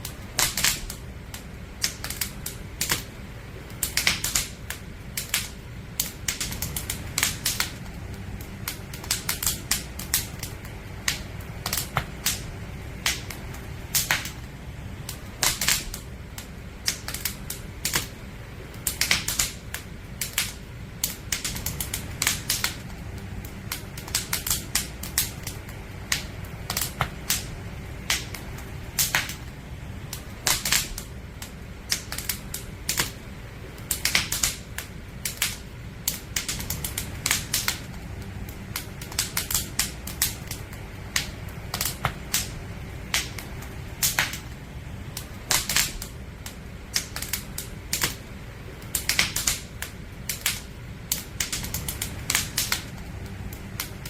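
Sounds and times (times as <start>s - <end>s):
campfire crackling and popping: 0.0s - 54.0s
low steady rumble: 0.0s - 54.0s.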